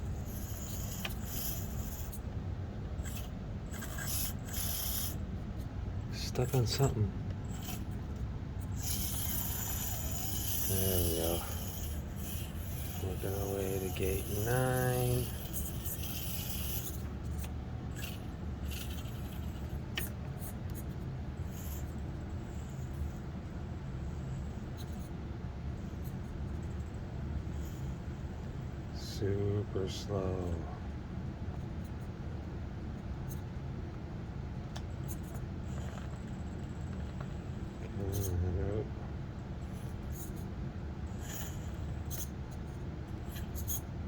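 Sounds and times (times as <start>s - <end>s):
toy car motor hum: 0.2s - 2.2s, 3.1s - 5.2s, 8.7s - 17.1s, 18.0s - 20.1s.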